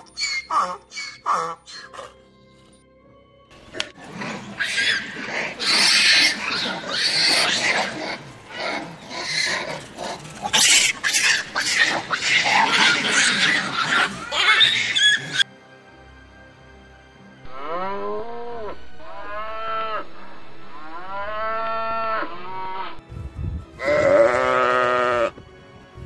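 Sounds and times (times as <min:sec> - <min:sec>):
farm animal harsh calls: 0:00.0 - 0:02.2, 0:04.3 - 0:15.5, 0:20.8 - 0:23.0, 0:23.8 - 0:25.3.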